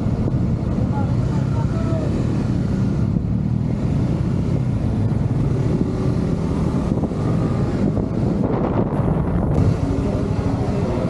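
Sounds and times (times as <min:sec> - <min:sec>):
engine running low rumble: 0:00.0 - 0:11.0.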